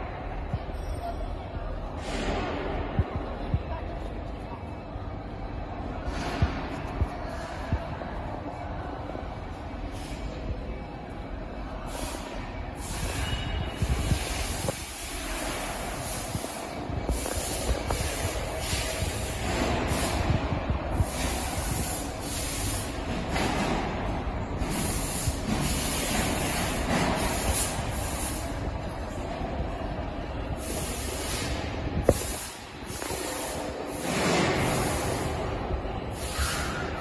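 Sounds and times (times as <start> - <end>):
factory machines running: 0.0 - 37.0
hissing bursts: 30.5 - 37.0.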